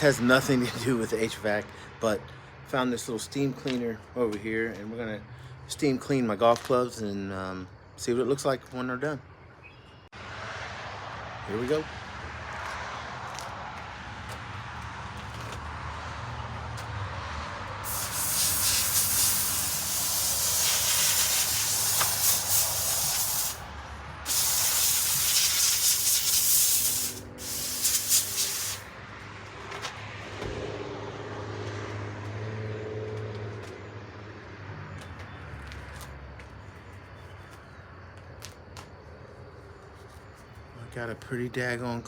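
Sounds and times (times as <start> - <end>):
steam cleaner hissing: 17.8 - 23.7, 24.3 - 28.9.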